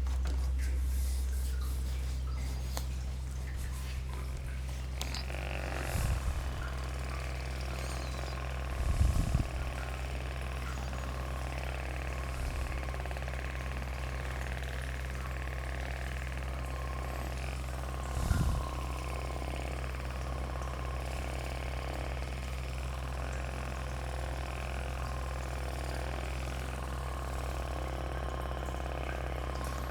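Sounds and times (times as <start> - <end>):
low mechanical hum: 0.0 - 29.9.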